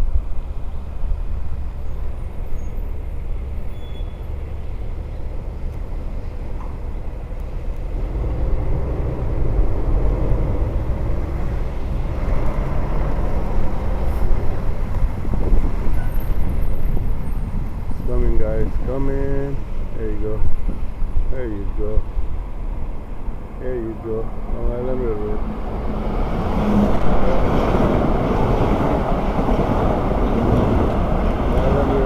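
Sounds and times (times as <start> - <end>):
low vehicle rumble: 0.0 - 32.0
wind on microphone: 7.8 - 18.9, 25.4 - 32.0.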